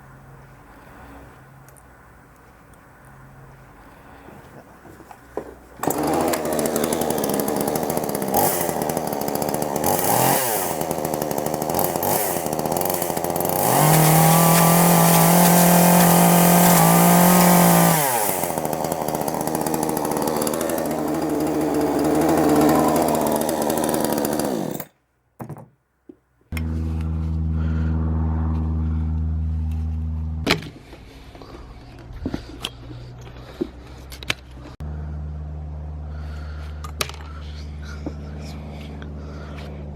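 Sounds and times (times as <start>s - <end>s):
chainsaw revving: 5.8s - 24.9s
low steady engine note: 26.6s - 39.9s.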